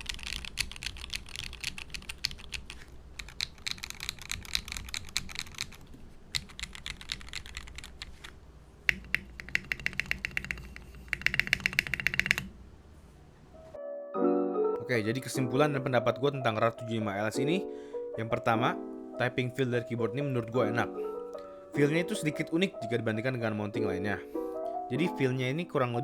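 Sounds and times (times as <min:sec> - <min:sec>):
mechanical keyboard typing: 0:00.0 - 0:12.5.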